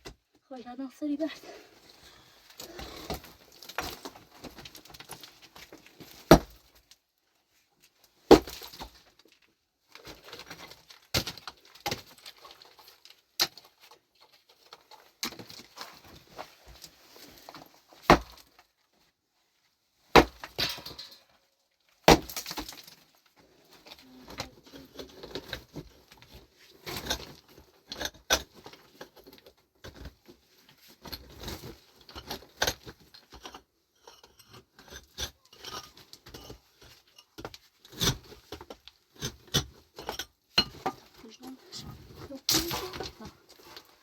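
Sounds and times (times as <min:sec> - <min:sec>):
small clinks and knocks: 0:20.4 - 0:21.5.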